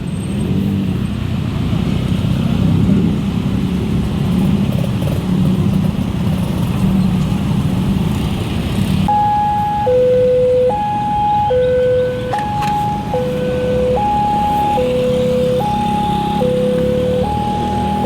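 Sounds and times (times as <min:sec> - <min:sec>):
road traffic: 0:00.0 - 0:18.0
level-crossing warning siren: 0:09.1 - 0:18.0.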